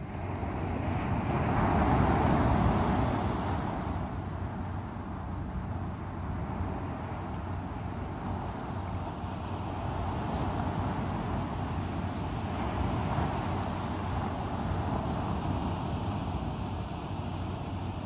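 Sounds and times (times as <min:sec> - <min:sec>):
sea waves breaking on shore: 0:00.0 - 0:18.0.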